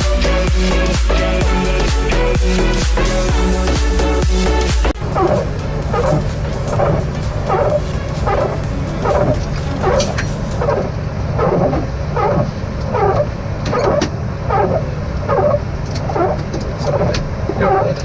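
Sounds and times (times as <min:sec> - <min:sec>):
airliner cockpit rumble: 0:04.9 - 0:18.0.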